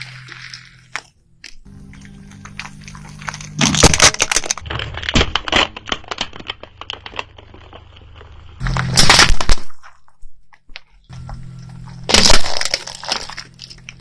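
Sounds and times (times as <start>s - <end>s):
crackling snaps: 0.0s - 14.0s
tyre crunching brittle items: 0.0s - 14.0s
car engine running: 11.1s - 14.0s.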